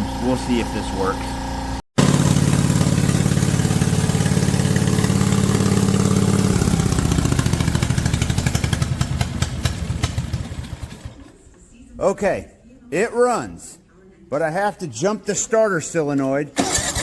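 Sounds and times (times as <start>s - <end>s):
mower engine running: 0.0s - 11.3s, 16.6s - 17.0s.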